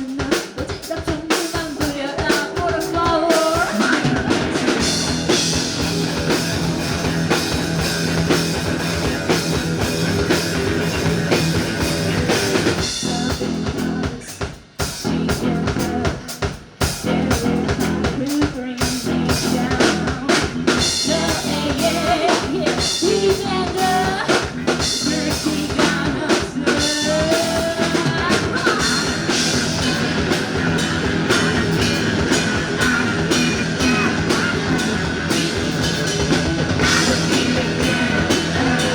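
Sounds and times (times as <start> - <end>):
rock band playing live: 0.0 - 38.9.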